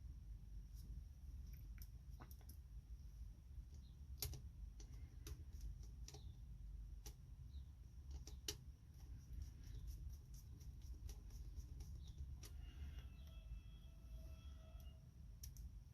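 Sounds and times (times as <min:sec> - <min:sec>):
faint low hum: 0:00.0 - 0:15.9
small parts and tools clicking: 0:03.7 - 0:13.5, 0:14.7 - 0:15.9.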